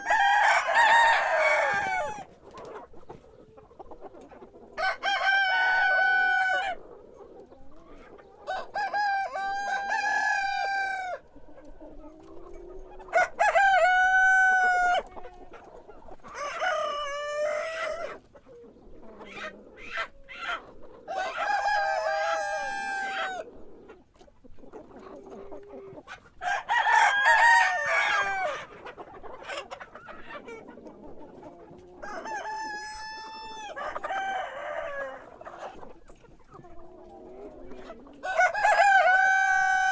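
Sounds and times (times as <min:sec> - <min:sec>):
rooster crowing: 0:00.0 - 0:02.2, 0:04.8 - 0:06.8, 0:13.1 - 0:15.0, 0:26.4 - 0:28.6, 0:38.2 - 0:39.9.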